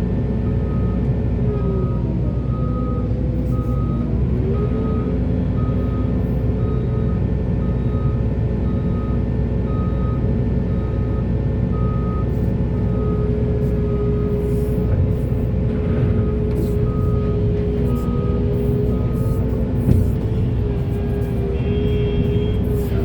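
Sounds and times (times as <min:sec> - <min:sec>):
heavy diesel machinery running: 0:00.0 - 0:23.0
backup alarm beeping: 0:16.8 - 0:23.0.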